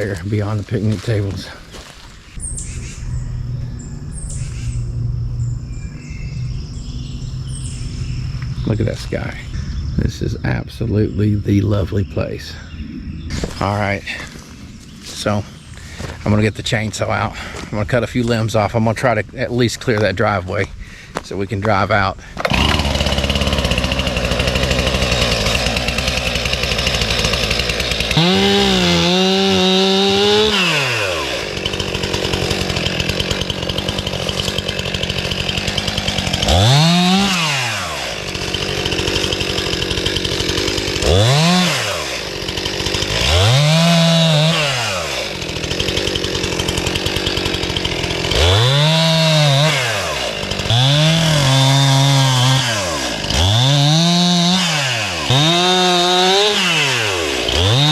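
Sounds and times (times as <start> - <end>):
chainsaw revving: 0.0 - 2.0, 22.4 - 57.9.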